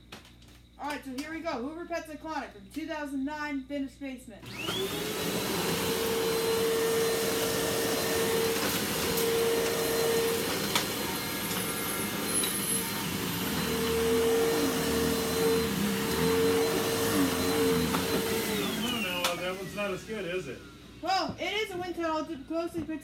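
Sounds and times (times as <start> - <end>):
vacuum cleaner running: 4.4 - 22.7.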